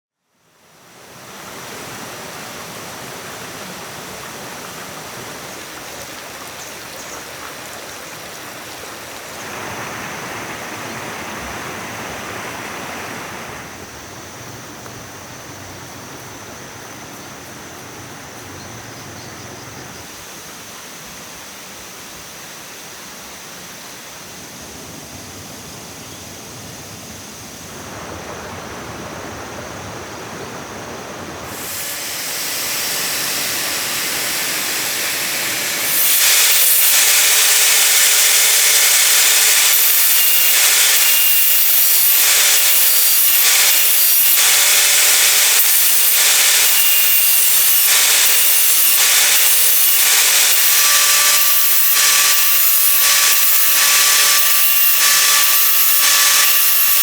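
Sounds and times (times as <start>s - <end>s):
steady rushing noise: 8.1s - 16.1s
thin high tone: 31.5s - 57.0s.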